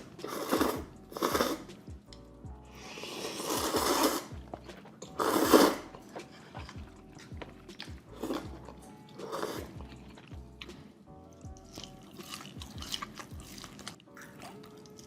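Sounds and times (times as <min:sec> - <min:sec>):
crunchy chewing: 0:02.8 - 0:10.8, 0:11.4 - 0:15.0.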